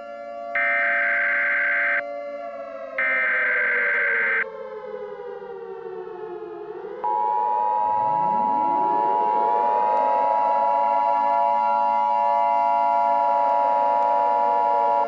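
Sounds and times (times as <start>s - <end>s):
civil defense siren winding: 0.0s - 15.0s
loud high tone: 0.6s - 2.0s, 3.0s - 4.4s
two-tone alert signal: 0.6s - 2.0s, 3.0s - 4.4s.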